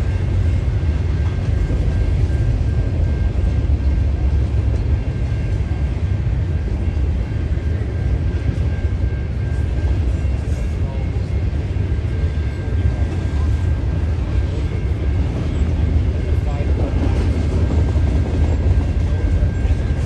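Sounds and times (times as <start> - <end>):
train rumbling: 0.0 - 20.0.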